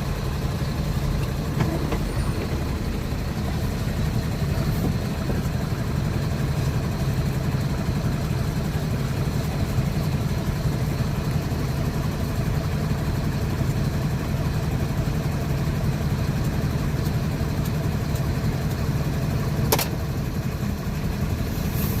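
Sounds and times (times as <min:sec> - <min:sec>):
diesel engine running: 0:00.0 - 0:22.0
sharp click: 0:19.7 - 0:20.0.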